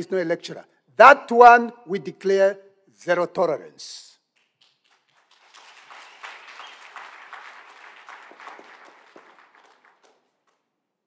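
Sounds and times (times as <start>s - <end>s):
audience applauding: 4.5s - 10.7s.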